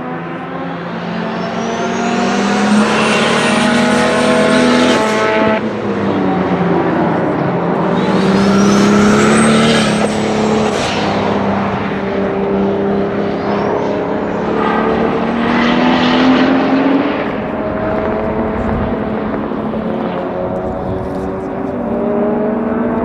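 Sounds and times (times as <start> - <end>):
car engine pulling hard: 0.0 - 23.0
high turbo whistle: 1.3 - 3.7, 8.0 - 11.1.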